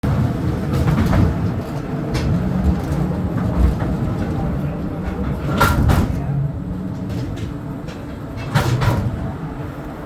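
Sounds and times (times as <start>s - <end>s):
train cars rumbling on rails: 0.0s - 10.0s
metal clanks and rattles: 5.0s - 6.3s, 6.9s - 9.4s.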